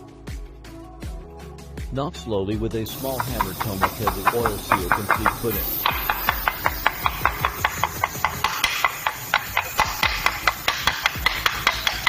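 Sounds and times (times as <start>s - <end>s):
small hammer tapping: 2.9s - 12.0s.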